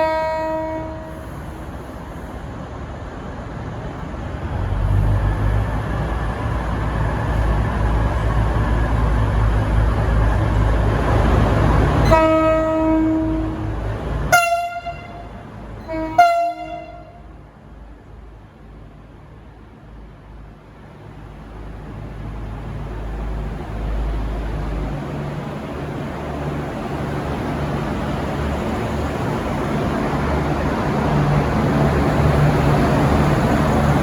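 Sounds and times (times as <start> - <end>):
train horn blasts: 0.0 - 1.3, 12.0 - 17.3
diesel railcar engine rumble: 0.0 - 34.0.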